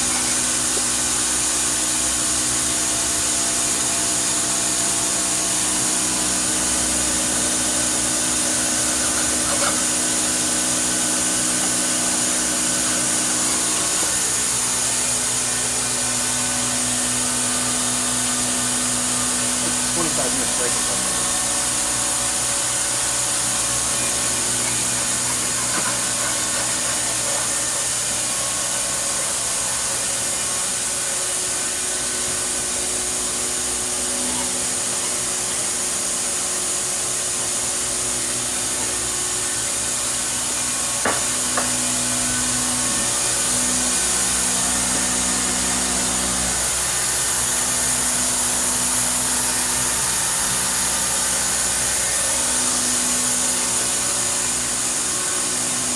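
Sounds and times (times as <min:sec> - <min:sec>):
machining center mechanical hum: 0:00.0 - 0:55.9.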